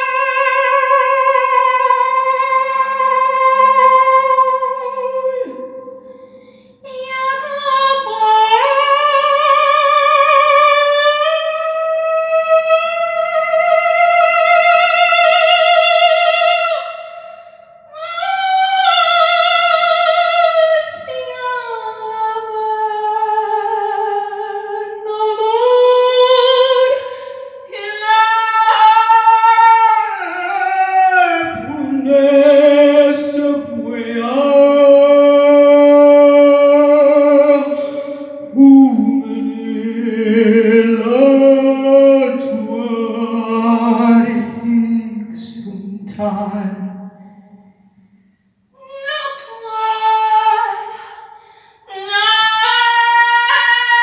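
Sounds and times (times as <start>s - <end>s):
lower voice singing: 0.0s - 47.7s, 48.8s - 54.0s
high voice singing with vibrato: 0.0s - 47.9s, 48.7s - 54.0s
singer breathing: 6.0s - 6.9s, 27.0s - 27.6s, 37.8s - 38.5s, 51.3s - 51.9s.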